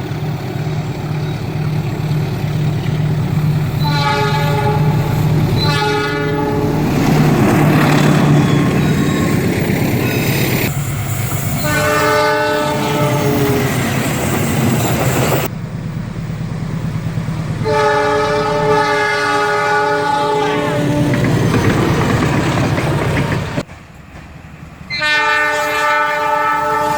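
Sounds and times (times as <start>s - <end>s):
train engine rumble: 0.0s - 26.9s
locomotive horn blasts: 3.8s - 6.9s, 11.6s - 13.8s, 17.6s - 21.2s, 24.9s - 26.9s.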